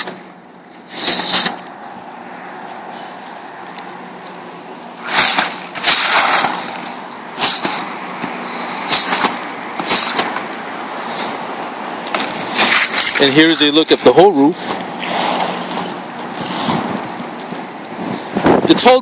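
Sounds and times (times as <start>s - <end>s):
broom sweeping water: 5.0s - 6.8s.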